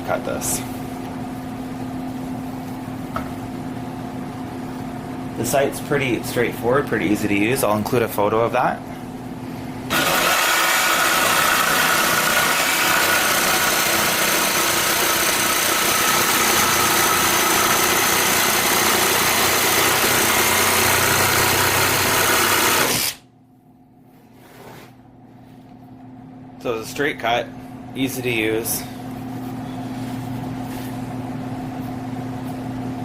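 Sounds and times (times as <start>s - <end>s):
jigsaw cutting: 9.9s - 23.2s.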